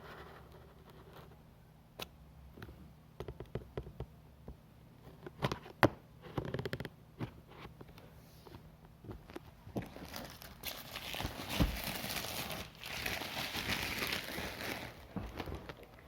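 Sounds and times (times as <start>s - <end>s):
hands handling packaging: 9.2s - 16.0s.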